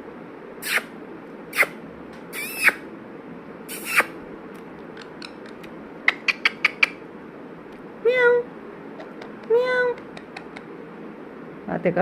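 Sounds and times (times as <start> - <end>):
parrot calls: 1.5 - 2.8, 3.7 - 4.2, 5.0 - 7.0, 8.1 - 10.7.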